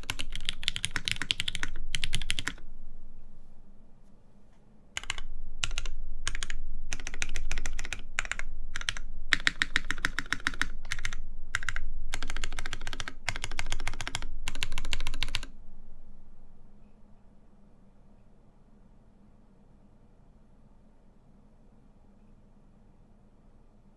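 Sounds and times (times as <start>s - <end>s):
mechanical keyboard typing: 0.0s - 2.6s, 5.0s - 15.5s.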